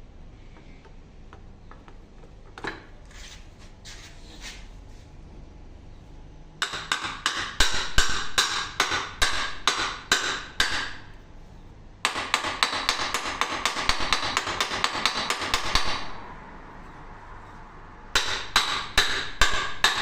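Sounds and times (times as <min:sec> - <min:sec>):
hammer tapping on metal: 0:06.6 - 0:11.1, 0:12.0 - 0:16.1, 0:18.2 - 0:20.0.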